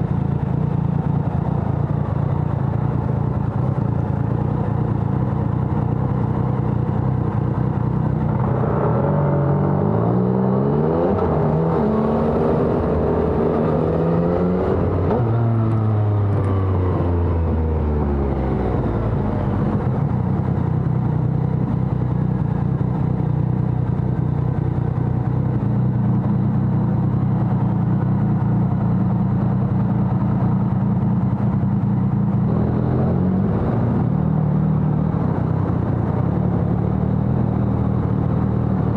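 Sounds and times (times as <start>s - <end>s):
motorcycle engine revving: 0.0s - 23.2s.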